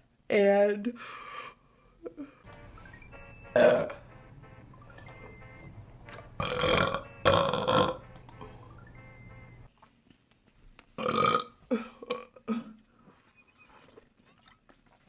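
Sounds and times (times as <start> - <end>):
faint background music: 2.4 - 9.9
woman burping: 11.0 - 12.8.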